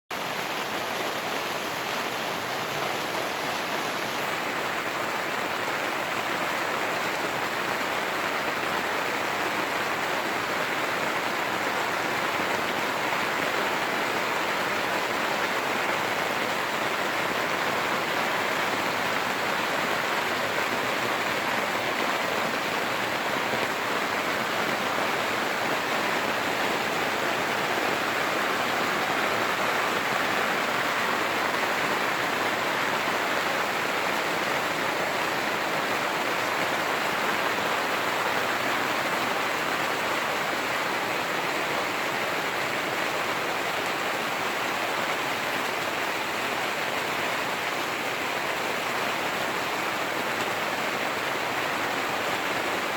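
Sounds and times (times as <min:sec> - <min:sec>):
heavy rain on tent fabric: 0:00.1 - 0:52.9.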